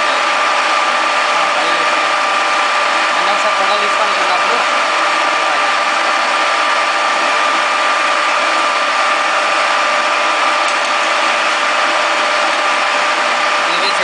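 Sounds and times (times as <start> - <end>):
high mechanical whine: 0.0 - 14.0
milling machine running: 0.0 - 14.0.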